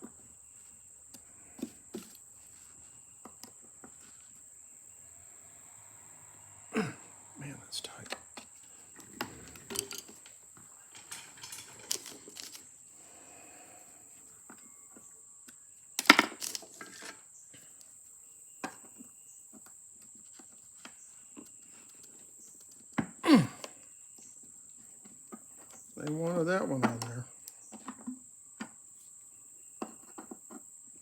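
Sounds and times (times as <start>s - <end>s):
metal tool clicks and clinks: 9.6s - 10.2s.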